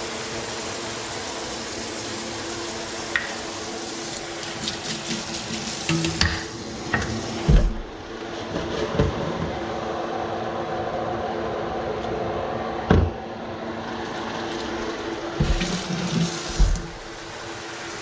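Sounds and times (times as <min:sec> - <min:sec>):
utensil scraping a pan: 0:08.2 - 0:09.8.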